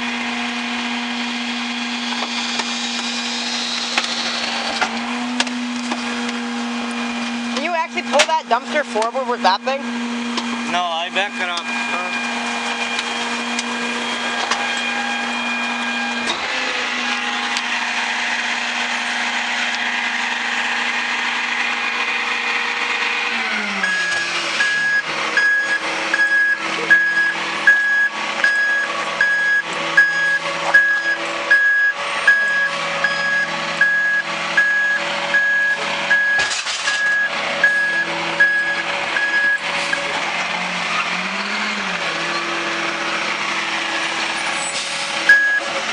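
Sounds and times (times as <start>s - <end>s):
garbage truck diesel engine: 0.0s - 45.9s
reversing alarm beeps: 11.7s - 12.4s, 23.8s - 40.1s, 45.3s - 45.7s.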